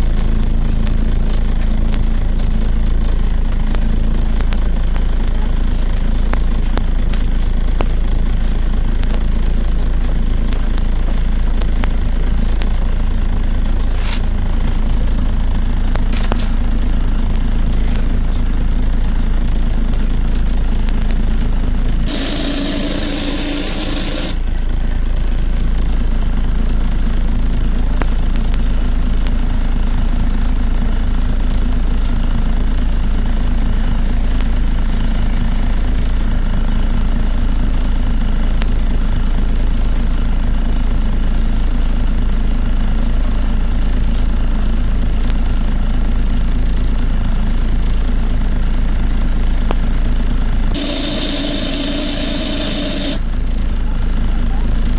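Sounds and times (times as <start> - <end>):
bus engine drone with suction noise: 0.0 - 54.9
air hissing: 22.1 - 24.4, 50.8 - 53.2.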